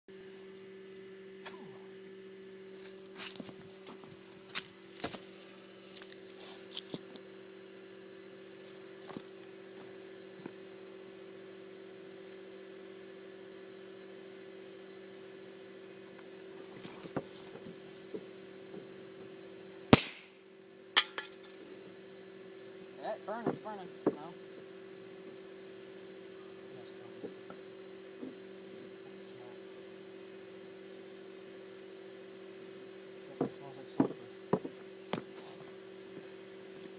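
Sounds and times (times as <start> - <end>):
steady hum: 0.1 - 36.9
sharp loud crack: 20.0 - 20.4.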